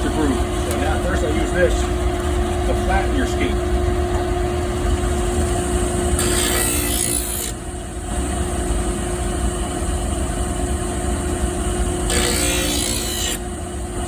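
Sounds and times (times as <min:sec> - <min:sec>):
grinding wheel humming: 0:00.0 - 0:14.0
skate blade grinding on stone: 0:06.2 - 0:07.6.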